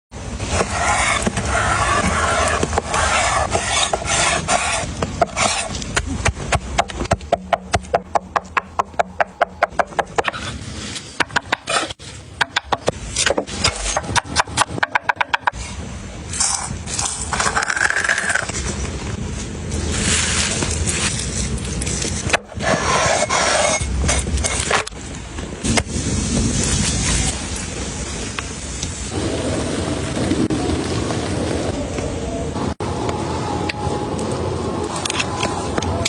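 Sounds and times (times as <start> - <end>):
steady rough hiss: 9.9 - 14.9, 15.5 - 34.8.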